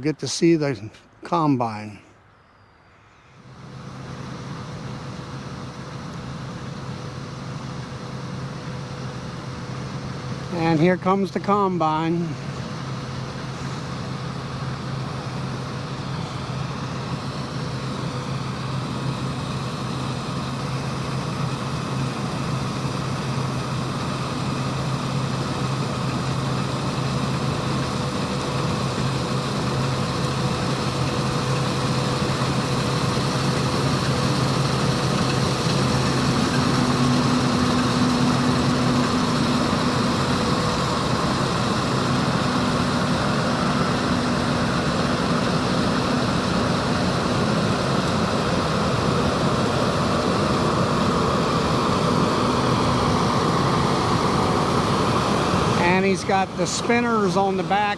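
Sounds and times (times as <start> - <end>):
combine harvester engine droning: 0.0 - 57.9
higher hum: 3.0 - 57.9.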